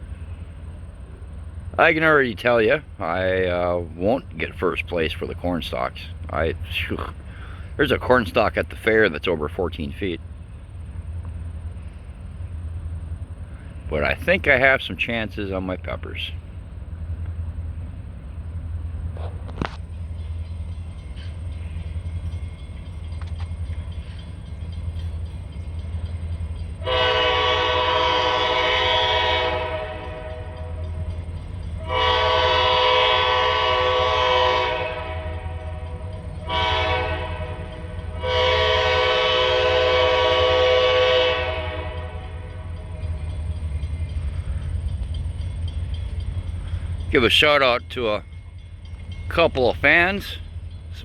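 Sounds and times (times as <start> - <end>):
steady low rumble: 0.0 - 26.8
locomotive air horn blasts: 26.8 - 31.1, 31.8 - 43.0.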